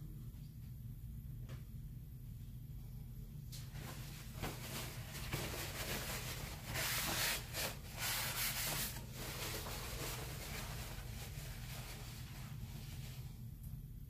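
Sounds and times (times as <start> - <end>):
steady low hum: 0.0 - 14.0
rubbing scraping strokes: 5.3 - 13.2.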